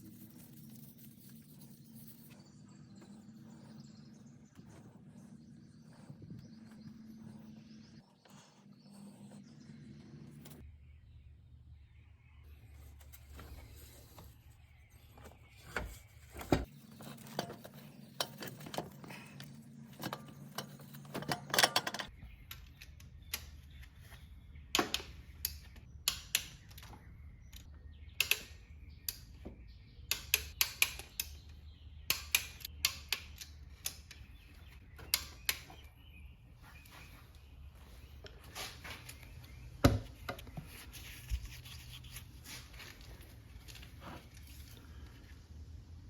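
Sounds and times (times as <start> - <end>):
metallic clicks of hand tools: 24.8 - 26.9, 27.5 - 29.3, 30.1 - 31.4, 32.1 - 34.2.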